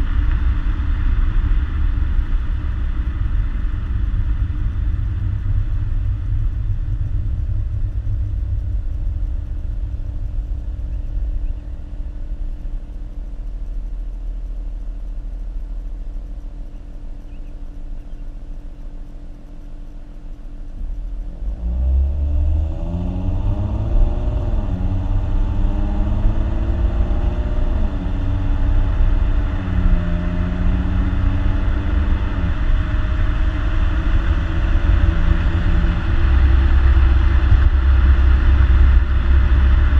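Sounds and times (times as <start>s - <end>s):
car engine accelerating: 0.0s - 39.9s.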